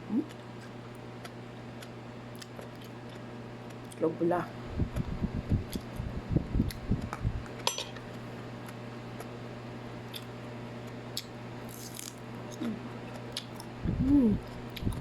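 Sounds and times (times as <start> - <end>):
steady low hum: 0.0 - 15.0
cutlery clinking on plate: 7.6 - 8.0.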